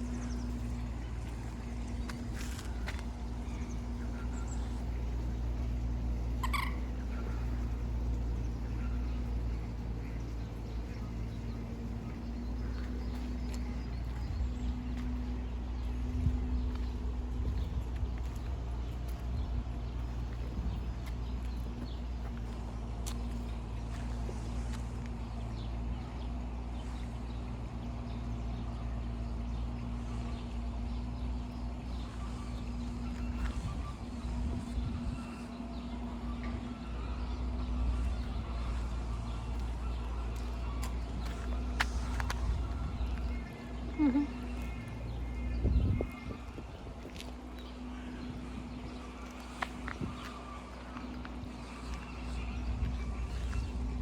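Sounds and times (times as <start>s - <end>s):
constant low hum: 0.0s - 54.0s
low outdoor rumble: 0.0s - 54.0s
faint bird chirps: 2.5s - 14.9s.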